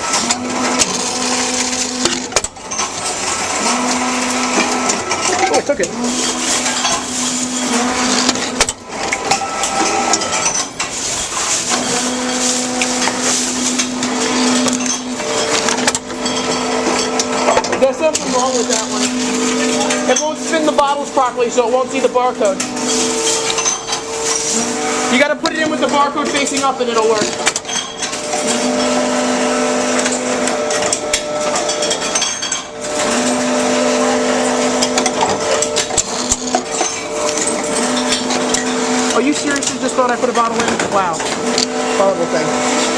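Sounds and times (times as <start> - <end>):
machine motor humming: 0.0 - 42.9
bottle clattering and knocking: 1.7 - 20.8, 22.6 - 24.6, 30.1 - 33.4.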